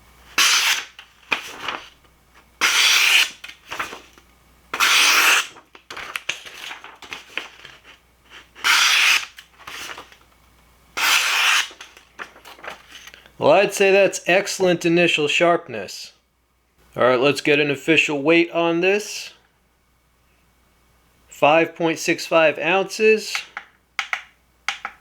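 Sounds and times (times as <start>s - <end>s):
knife slicing through paper: 0.4s - 1.9s, 2.6s - 4.1s, 4.8s - 7.8s, 8.5s - 10.1s, 11.0s - 11.9s
paper rustles: 1.0s - 2.1s, 3.2s - 4.2s, 5.5s - 8.6s, 9.6s - 10.2s, 11.6s - 13.2s.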